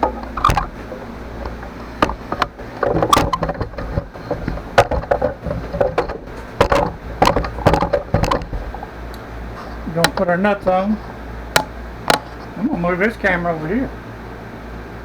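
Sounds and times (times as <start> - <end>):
metal hardware clicking: 0.0 - 9.3, 9.9 - 10.9, 11.6 - 12.5.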